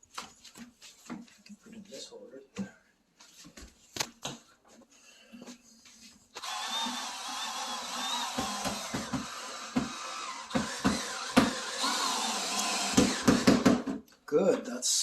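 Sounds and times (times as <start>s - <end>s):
power drill driving a screw: 6.4s - 13.9s.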